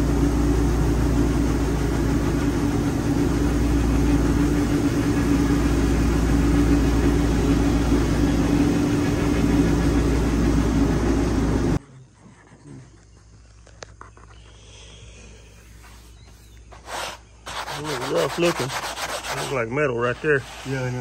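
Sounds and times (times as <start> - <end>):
band sawmill engine running: 0.0 - 11.8, 17.5 - 21.0
band blade sawing through log: 16.8 - 21.0.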